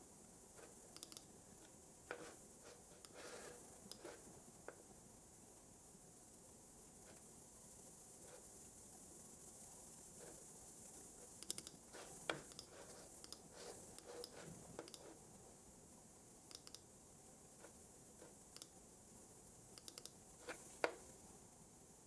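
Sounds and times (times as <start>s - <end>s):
faint steady hiss: 0.0s - 22.0s
mouse clicks: 0.9s - 1.3s, 3.9s - 4.1s, 11.4s - 15.2s, 16.5s - 16.9s, 18.5s - 18.8s, 19.8s - 21.0s.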